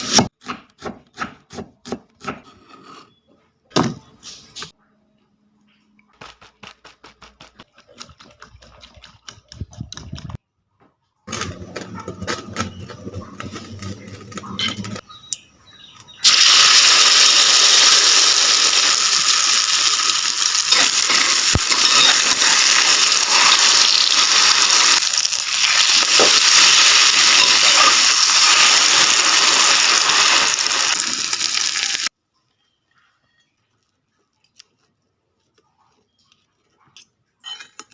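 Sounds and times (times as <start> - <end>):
eggs sizzling in hot oil: 16.2 - 32.2.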